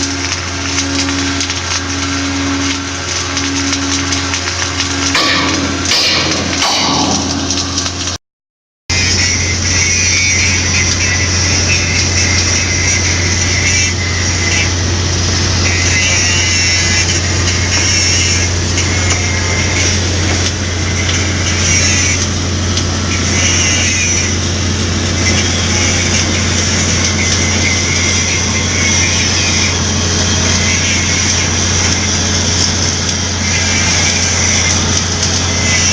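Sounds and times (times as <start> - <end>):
welding machine humming: 0.0 - 8.2, 8.9 - 35.9
welding hiss: 9.0 - 35.9.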